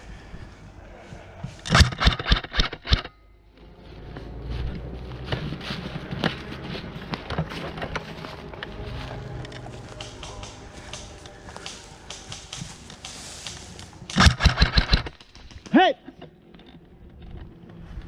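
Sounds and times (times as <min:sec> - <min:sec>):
close rustling and scraping: 0:00.0 - 0:18.0
airsoft gun shots: 0:14.1 - 0:15.2.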